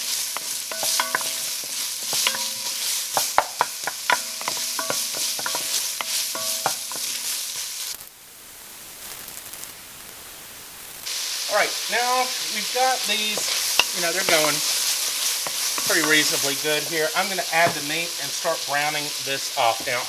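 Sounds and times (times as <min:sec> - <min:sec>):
spoon clacking against pot: 0:00.0 - 0:07.6, 0:13.0 - 0:18.0
onions sizzling in oil: 0:00.0 - 0:20.0.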